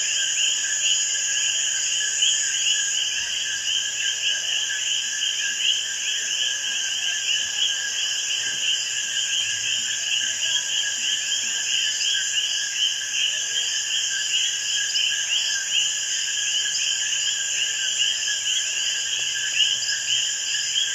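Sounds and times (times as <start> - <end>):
high insect buzz: 0.0 - 3.1.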